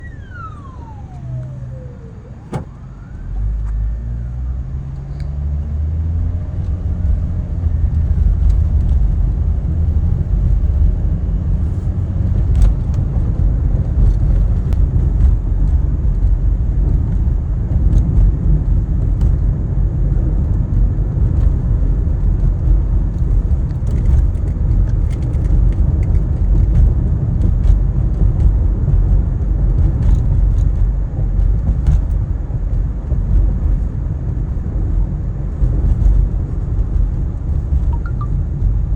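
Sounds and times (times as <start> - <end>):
ambulance siren wailing: 0.0 - 4.8, 38.0 - 38.4
vehicle engine revving and rumbling: 0.0 - 38.9.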